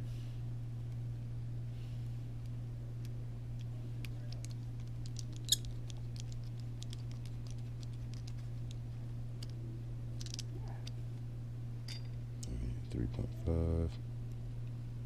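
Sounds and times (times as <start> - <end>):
low hum: 0.0 - 15.0
small parts clicking and tapping: 2.4 - 8.8, 10.2 - 11.0.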